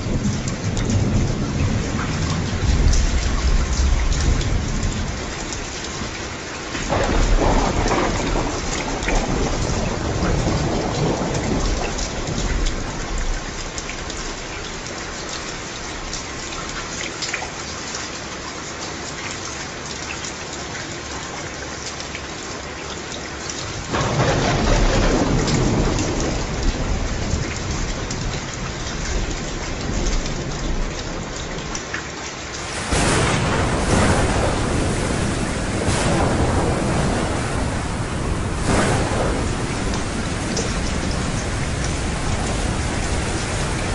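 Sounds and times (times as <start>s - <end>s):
thunder rumbling: 0.0s - 5.8s, 6.8s - 13.7s, 23.9s - 31.6s, 32.6s - 43.9s
heavy rain: 0.0s - 43.9s.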